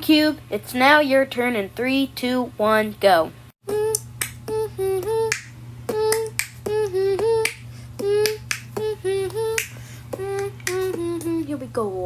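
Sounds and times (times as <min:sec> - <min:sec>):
constant low hum: 0:00.0 - 0:12.0
cartoon voice beatboxing: 0:03.7 - 0:11.4.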